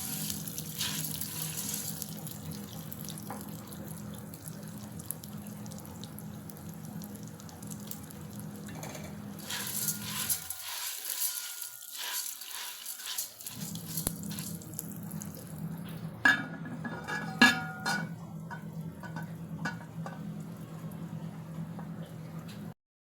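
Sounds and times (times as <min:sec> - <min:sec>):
cookware clattering: 0:08.7 - 0:13.3, 0:16.2 - 0:20.3
ringing metal clanks: 0:16.3 - 0:19.8.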